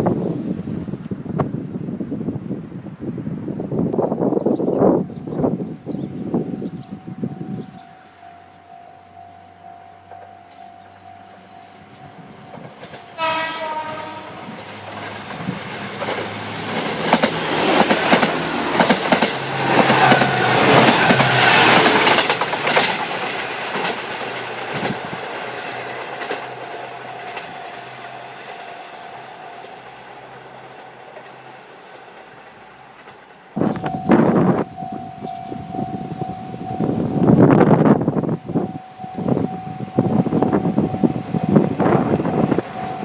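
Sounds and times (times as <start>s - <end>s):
level crossing bell ringing: 6.9s - 13.2s, 33.7s - 37.3s, 38.3s - 41.2s, 42.6s - 43.0s
train wheels clattering: 9.4s - 34.1s
train horn: 12.8s - 14.9s, 19.7s - 22.1s.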